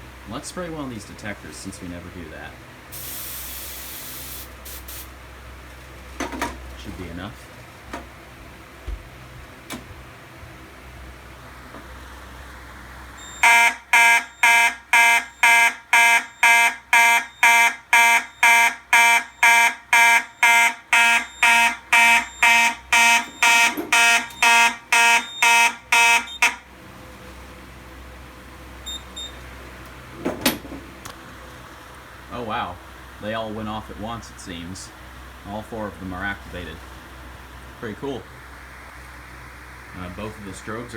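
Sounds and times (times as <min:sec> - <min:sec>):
fire alarm horn buzzing blasts: 0:13.2 - 0:26.7.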